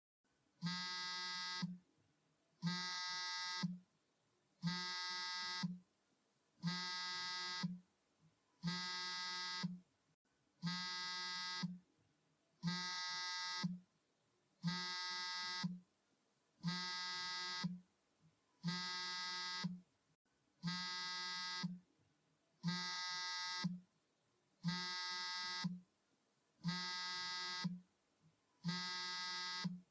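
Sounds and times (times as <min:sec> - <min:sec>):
mobile phone vibrating: 0:00.6 - 0:01.8, 0:02.6 - 0:03.9, 0:04.6 - 0:05.8, 0:06.6 - 0:07.8, 0:08.6 - 0:09.8, 0:10.6 - 0:11.8, 0:12.6 - 0:13.9, 0:14.6 - 0:15.8, 0:16.6 - 0:17.8, 0:18.6 - 0:19.9, 0:20.6 - 0:21.8, 0:22.6 - 0:23.9, 0:24.6 - 0:25.9, 0:26.6 - 0:27.9, 0:28.6 - 0:29.9.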